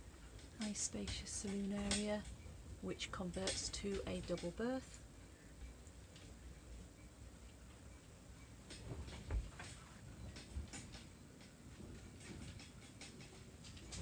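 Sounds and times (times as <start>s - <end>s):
low background rumble: 0.0s - 14.0s
faint clicks and light knocks: 0.3s - 2.4s, 7.4s - 14.0s.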